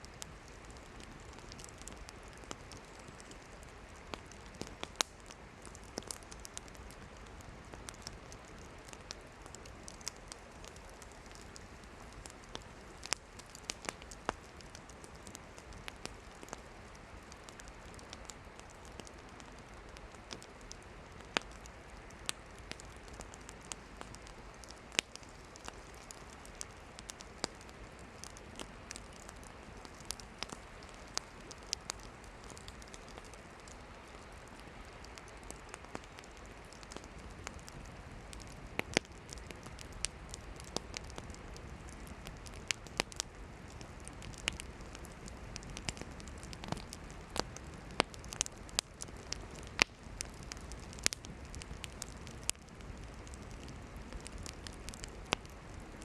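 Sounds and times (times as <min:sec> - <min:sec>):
campfire crackling and popping: 0:00.0 - 0:56.0.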